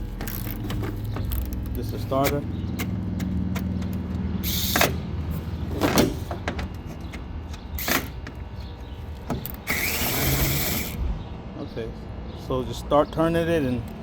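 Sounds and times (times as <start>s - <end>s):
electric ratchet bursts: 9.5s - 11.0s.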